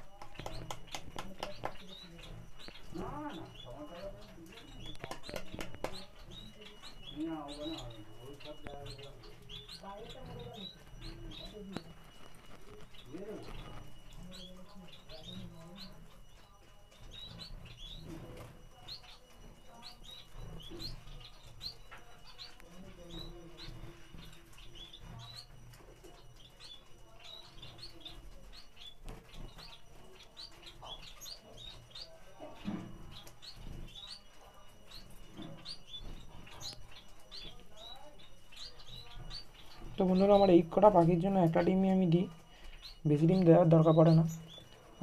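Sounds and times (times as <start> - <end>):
finches chirping: 0.0 - 45.0.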